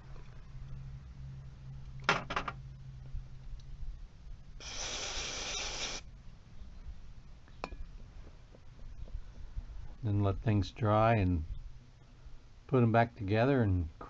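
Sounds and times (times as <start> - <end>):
aerosol can spraying hiss: 4.6 - 6.0.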